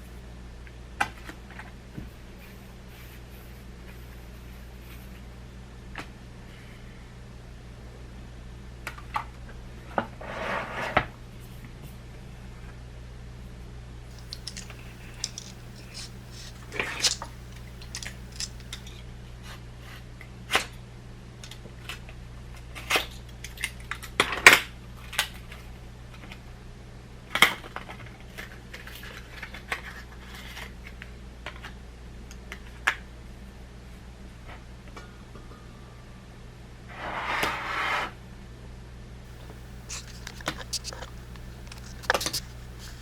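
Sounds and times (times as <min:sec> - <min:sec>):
clicks and taps of small tools: 0:14.1 - 0:18.9, 0:39.3 - 0:43.0.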